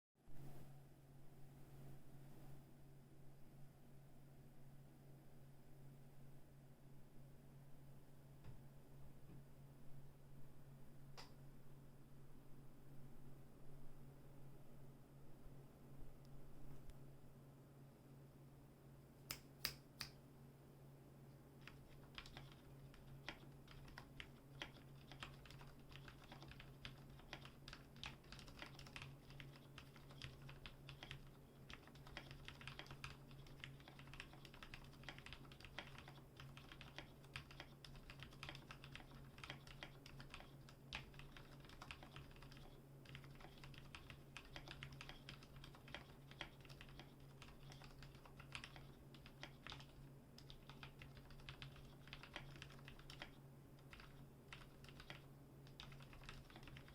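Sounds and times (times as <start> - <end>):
steady low hum: 0.3 - 56.9
mechanical keyboard typing: 21.6 - 56.9.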